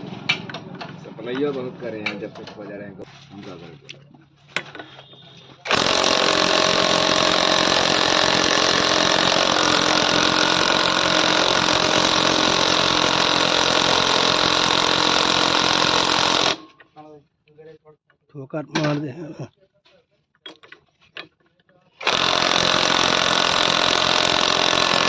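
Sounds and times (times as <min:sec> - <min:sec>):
power tool motor running: 0:05.7 - 0:16.6, 0:22.0 - 0:25.0.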